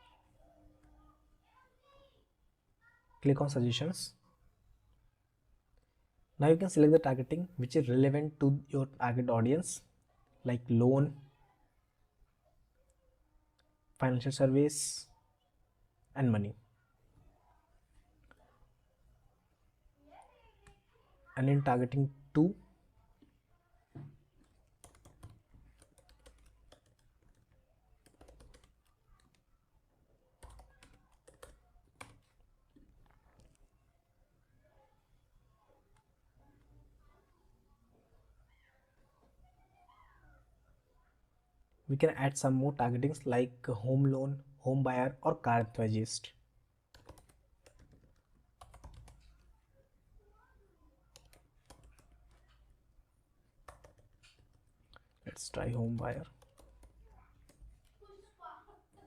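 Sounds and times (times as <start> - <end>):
computer keyboard typing: 24.4 - 29.5, 30.4 - 33.7, 46.9 - 49.5, 51.1 - 52.7, 53.6 - 58.0.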